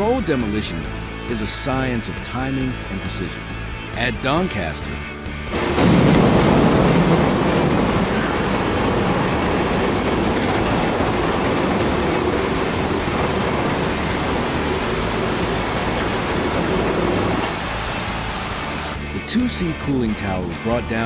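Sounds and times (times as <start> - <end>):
cooling tower collapsing rumble: 5.5 - 19.0.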